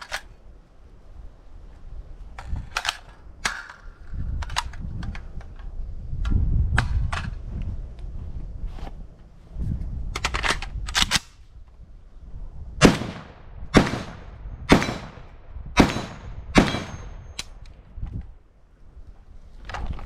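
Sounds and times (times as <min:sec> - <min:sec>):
rifle clicks and rattles: 0:00.0 - 0:00.4, 0:02.3 - 0:07.4, 0:10.1 - 0:11.4, 0:16.0 - 0:18.4, 0:19.6 - 0:20.0
rifle shots: 0:12.8 - 0:17.4.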